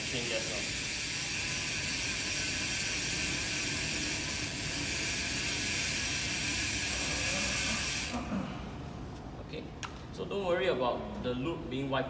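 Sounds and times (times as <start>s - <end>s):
bicycle freewheel ratcheting: 0.0s - 8.3s.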